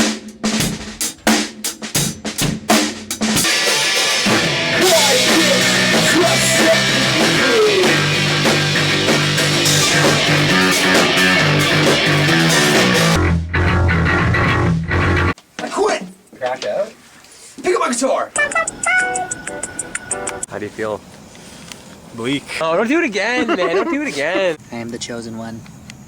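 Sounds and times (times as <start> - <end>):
drum kit hits: 0.0 - 15.3
band music: 3.2 - 15.4, 18.4 - 20.5
sliding melody: 18.4 - 20.5.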